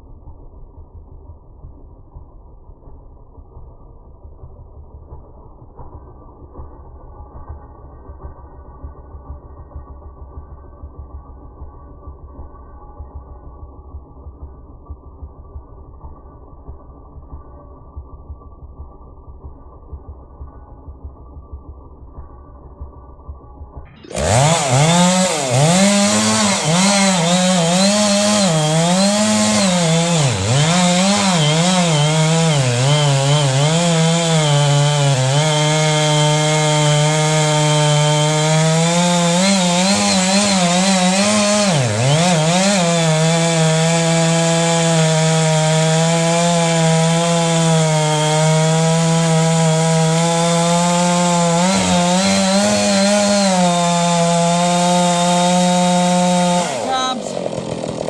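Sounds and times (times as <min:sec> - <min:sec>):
chainsaw cutting wood: 0:05.0 - 0:08.4, 0:23.9 - 0:58.0.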